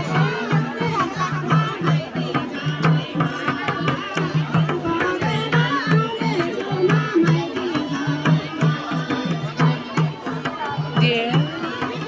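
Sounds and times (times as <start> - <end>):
hand drum steady beat: 0.0 - 12.0.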